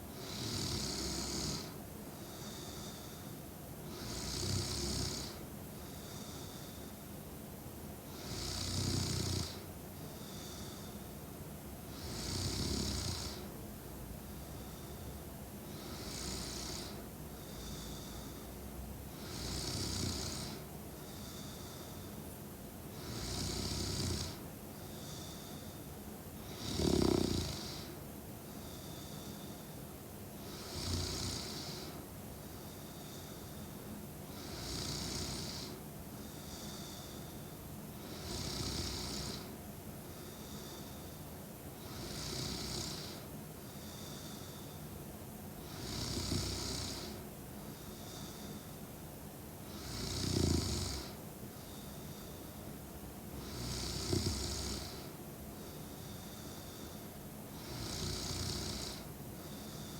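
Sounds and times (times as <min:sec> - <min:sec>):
woman snoring: 0:00.2 - 0:01.8, 0:03.9 - 0:05.4, 0:08.2 - 0:09.7, 0:11.9 - 0:13.5, 0:15.8 - 0:18.5, 0:19.2 - 0:22.1, 0:23.0 - 0:24.4, 0:26.4 - 0:28.0, 0:30.5 - 0:32.0, 0:34.3 - 0:35.8, 0:38.0 - 0:39.5, 0:41.8 - 0:44.6, 0:45.6 - 0:47.2, 0:49.7 - 0:51.2, 0:53.4 - 0:55.2, 0:57.6 - 0:59.9
soft breathing out: 0:20.4 - 0:23.0, 0:24.3 - 0:26.5, 0:27.7 - 0:30.0, 0:31.8 - 0:34.6, 0:35.6 - 0:37.8, 0:39.4 - 0:41.5, 0:43.1 - 0:45.0, 0:47.0 - 0:48.9, 0:51.0 - 0:54.0, 0:54.8 - 0:58.1, 0:58.9 - 0:59.9.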